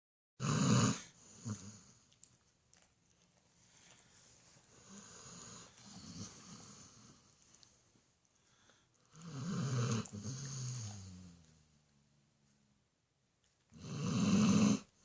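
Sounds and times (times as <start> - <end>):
dog snoring: 0.4 - 2.0, 4.7 - 7.3, 8.5 - 11.6, 13.7 - 15.0.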